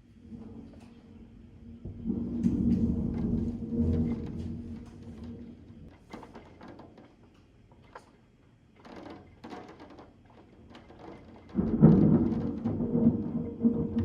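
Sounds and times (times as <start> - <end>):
thunder rumbling: 0.2 - 6.0, 11.5 - 14.0
loud thunderclap: 1.9 - 5.6, 11.6 - 14.0.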